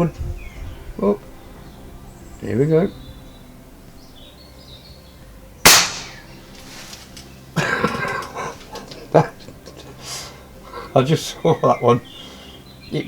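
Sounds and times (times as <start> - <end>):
air rifle pop: 5.7 - 6.3.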